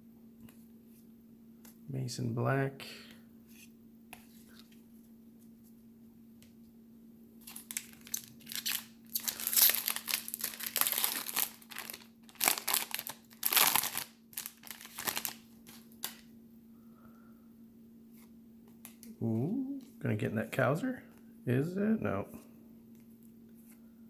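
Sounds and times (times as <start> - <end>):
foil wrapper crinkling and tearing: 7.4 - 16.3.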